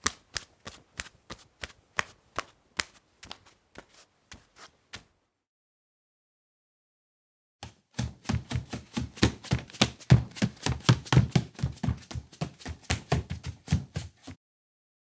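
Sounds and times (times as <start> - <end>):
bare feet slapping on ground: 7.6 - 14.4.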